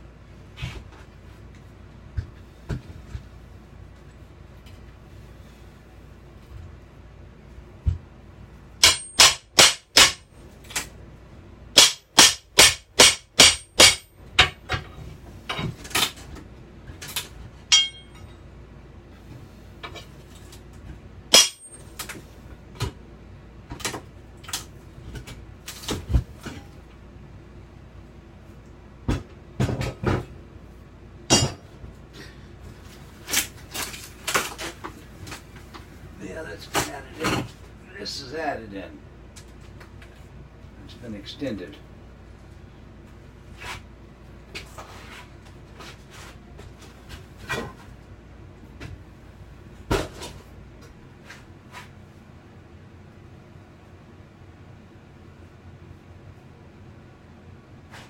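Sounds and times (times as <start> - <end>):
hammer blows: 17.7 - 18.2.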